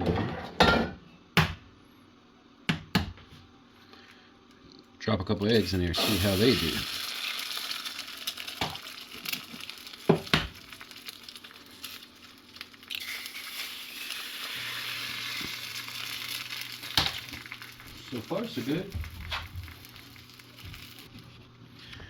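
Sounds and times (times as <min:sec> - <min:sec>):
eggs sizzling in a skillet: 0:05.5 - 0:21.4.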